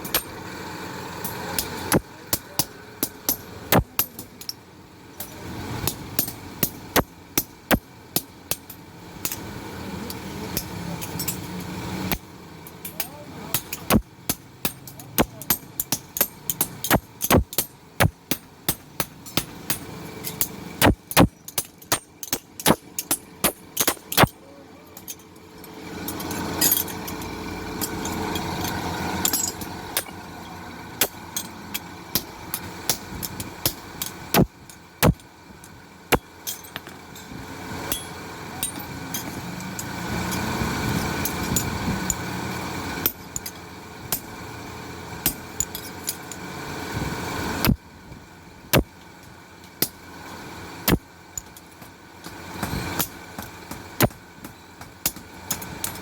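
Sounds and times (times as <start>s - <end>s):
steady mechanical noise: 0.0s - 56.0s
hammer striking metal: 1.3s - 4.6s, 5.2s - 9.4s, 12.8s - 24.4s, 26.1s - 30.2s, 31.0s - 35.2s, 37.9s - 40.4s.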